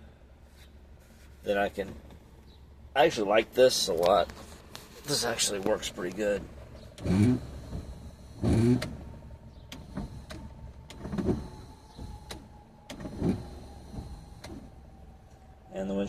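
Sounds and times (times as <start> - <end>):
windshield wiper motor whirring: 5.1 - 14.9.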